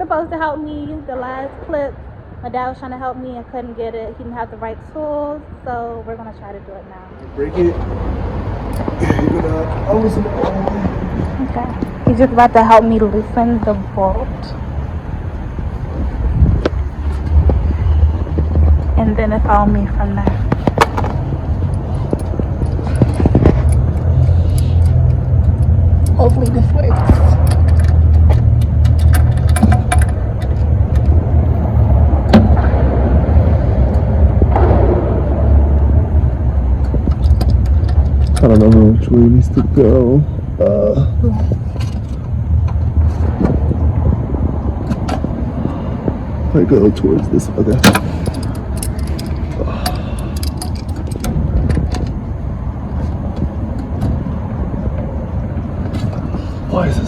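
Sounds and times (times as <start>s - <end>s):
steady low rumble: 0.0s - 57.0s
metal wrench clicking and clinking: 21.6s - 30.6s, 47.8s - 52.1s
wrench clicking: 47.8s - 52.1s.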